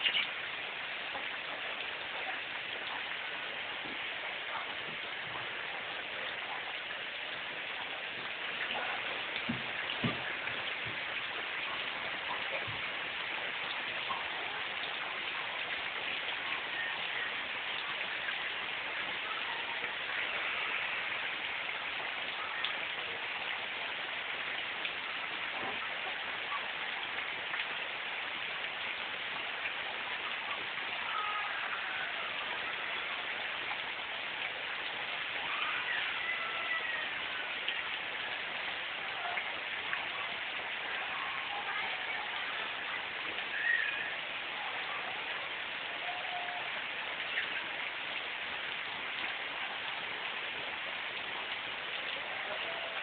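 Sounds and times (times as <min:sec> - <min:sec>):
heavy rain pouring: 0:00.0 - 0:53.0.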